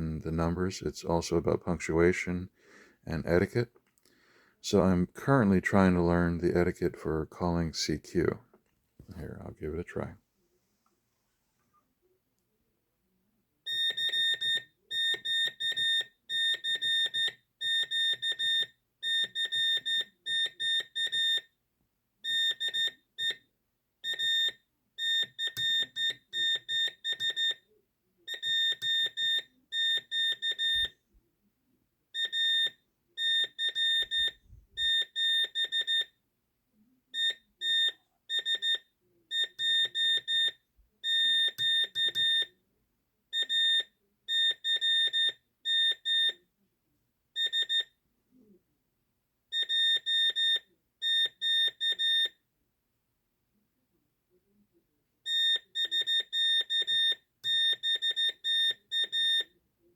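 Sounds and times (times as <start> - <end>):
morse code beeps: 13.7 - 21.5, 22.3 - 23.4, 24.0 - 27.6, 28.3 - 30.9, 32.2 - 36.1, 37.2 - 42.5, 43.4 - 46.4, 49.6 - 52.3, 55.3 - 59.5.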